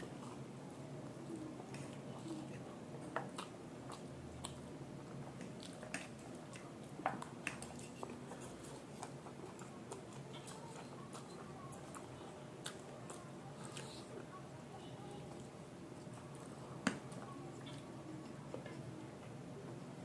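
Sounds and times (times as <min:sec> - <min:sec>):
person chewing: 0:00.0 - 0:14.2.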